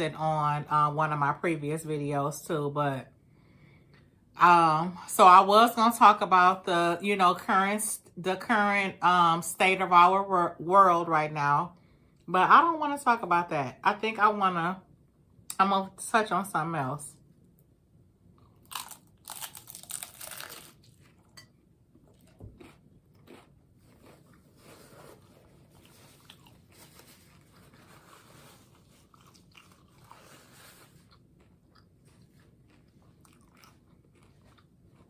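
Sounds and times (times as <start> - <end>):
crunchy bites into taco: 18.4 - 21.3, 22.1 - 24.5
chewing: 18.4 - 35.0.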